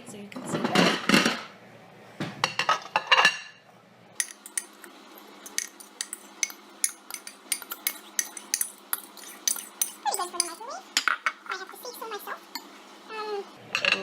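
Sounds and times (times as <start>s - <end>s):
metal fork clinking against mug: 4.2s - 10.6s.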